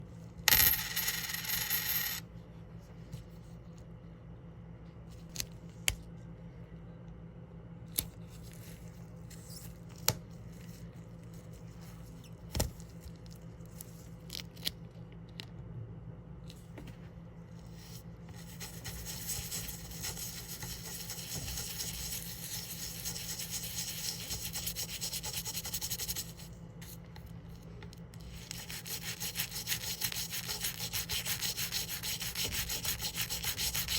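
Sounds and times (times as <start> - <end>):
low steady hum: 0.0 - 33.9
scrubbing a coin: 0.5 - 2.2, 17.6 - 27.0, 28.2 - 33.9.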